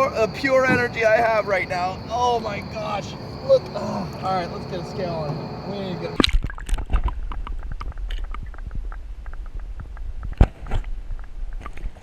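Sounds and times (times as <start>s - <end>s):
low rumble on microphone: 6.2s - 12.0s.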